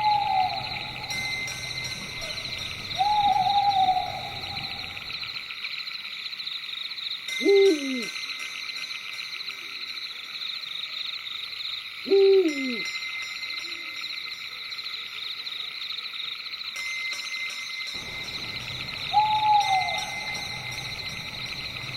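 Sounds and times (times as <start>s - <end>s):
owl hooting: 0.0s - 5.3s, 7.4s - 8.1s, 12.1s - 12.9s, 18.0s - 21.9s
night chorus of insects or frogs: 0.0s - 21.9s.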